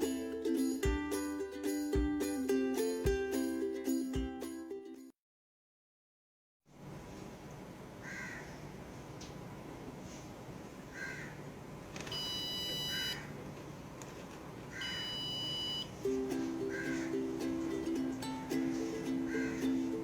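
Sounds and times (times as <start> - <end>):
door alarm buzzer beeps: 12.1 - 13.2, 14.8 - 16.0.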